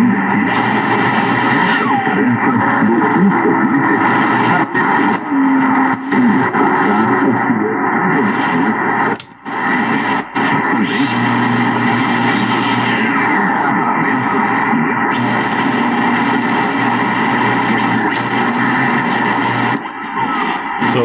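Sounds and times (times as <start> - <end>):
radio static hiss: 0.0 - 21.0
wavering radio whistles: 0.0 - 21.0
sharp switch click: 9.1 - 9.4.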